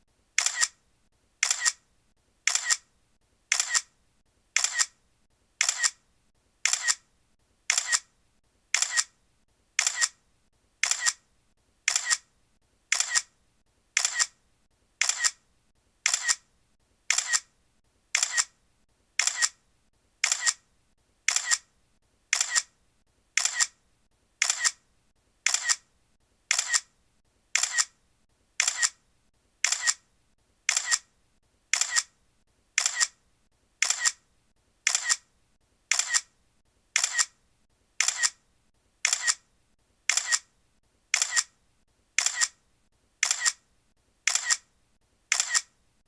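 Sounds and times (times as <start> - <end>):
camera shutter double clicks: 0.4 - 0.8, 1.4 - 1.8, 2.5 - 2.8, 3.5 - 3.9, 4.6 - 5.0, 5.6 - 6.0, 6.6 - 7.0, 7.7 - 8.1, 8.8 - 9.1, 9.8 - 10.2, 10.8 - 11.2, 11.9 - 12.2, 12.9 - 13.3, 14.0 - 14.4, 15.0 - 15.4, 16.0 - 16.4, 17.1 - 17.5, 18.2 - 18.5, 19.2 - 19.6, 20.2 - 20.6, 21.3 - 21.7, 22.3 - 22.7, 23.4 - 23.8, 24.4 - 24.8, 25.5 - 25.8, 26.5 - 26.9, 27.6 - 27.9, 28.6 - 29.0, 29.6 - 30.0, 30.7 - 31.1, 31.7 - 32.1, 32.8 - 33.2, 33.8 - 34.2, 34.9 - 35.2, 35.9 - 36.3, 37.0 - 37.3, 38.0 - 38.4, 39.0 - 39.4, 40.1 - 40.5, 41.1 - 41.5, 42.2 - 42.6, 43.2 - 43.6, 44.3 - 44.7, 45.3 - 45.7.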